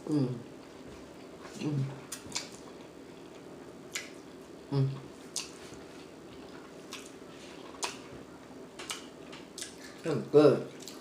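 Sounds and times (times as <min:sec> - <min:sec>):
wet mouth smacking while chewing: 0:02.1 - 0:02.8, 0:05.3 - 0:05.6, 0:08.8 - 0:10.0, 0:10.8 - 0:11.0.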